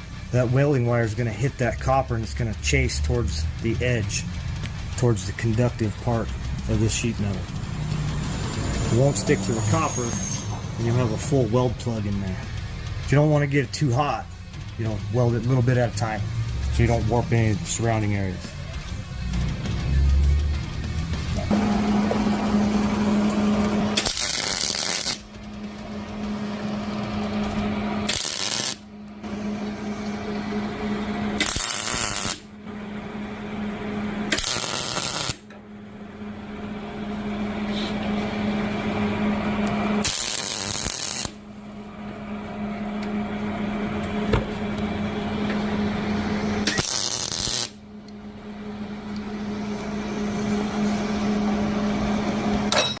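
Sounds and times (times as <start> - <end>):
grinder whine: 3.4 - 53.0
harsh grinding bursts: 21.3 - 25.4, 26.0 - 32.5, 34.2 - 35.4, 38.4 - 41.4, 45.7 - 47.8.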